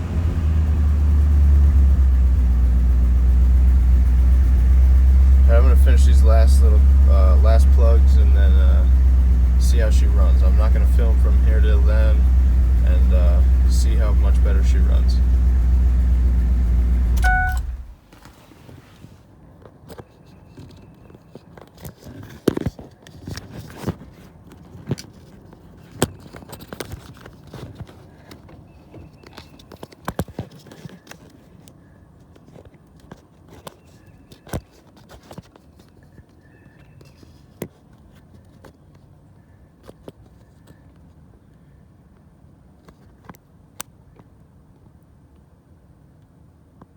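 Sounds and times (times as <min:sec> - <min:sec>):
truck engine idling: 0:00.0 - 0:18.0.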